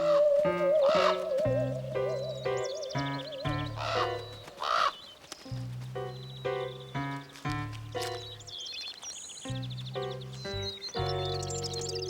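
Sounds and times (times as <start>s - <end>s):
cartoon background music: 0.0s - 4.4s.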